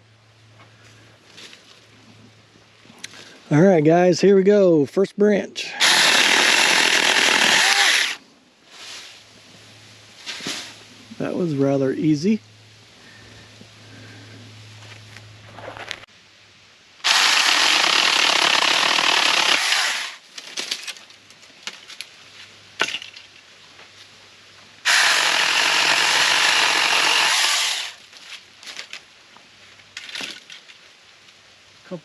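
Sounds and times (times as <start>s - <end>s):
electric chainsaw cutting branches: 5.8s - 8.2s, 17.0s - 20.2s, 24.8s - 28.0s.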